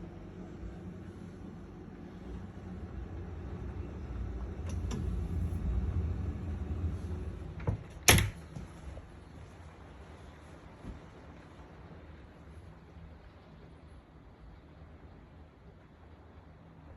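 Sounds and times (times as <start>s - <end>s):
low rumbling handling noise: 0.0s - 11.6s
door shutting with a knock: 7.6s - 8.7s.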